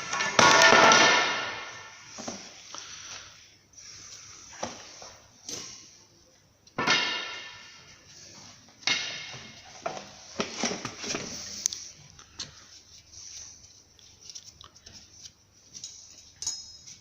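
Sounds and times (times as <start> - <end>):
loud ringing metal clangs: 0.0 - 1.9.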